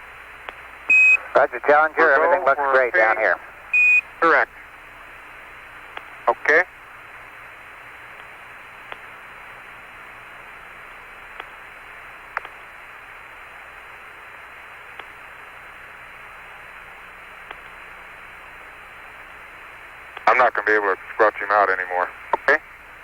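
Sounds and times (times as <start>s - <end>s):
radio static hiss: 0.0s - 23.0s
sharp radio clicks: 11.3s - 11.6s, 12.3s - 12.7s, 17.4s - 17.8s, 20.1s - 22.6s.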